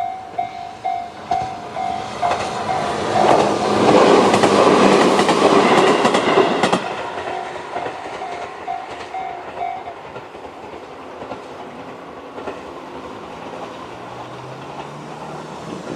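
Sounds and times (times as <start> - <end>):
crossing warning bell ringing: 0.0 - 4.0, 5.0 - 10.2
train wheels clattering over rail joints: 1.0 - 15.9.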